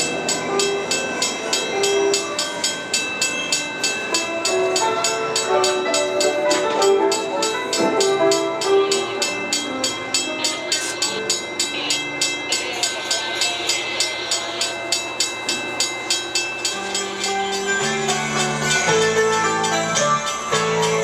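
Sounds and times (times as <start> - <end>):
festive holiday song with sleigh bells: 0.0 - 21.0
train at station: 0.0 - 21.0.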